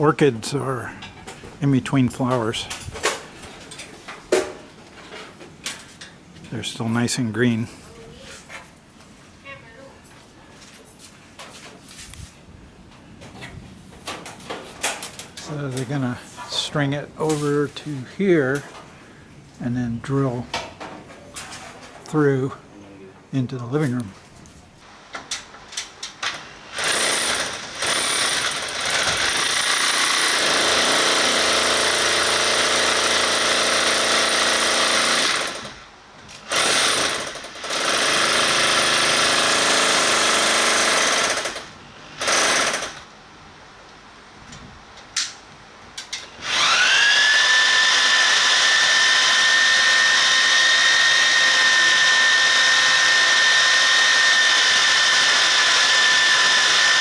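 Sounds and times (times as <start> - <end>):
power drill boring through wall: 26.2 - 35.8, 36.4 - 43.1, 46.2 - 57.0.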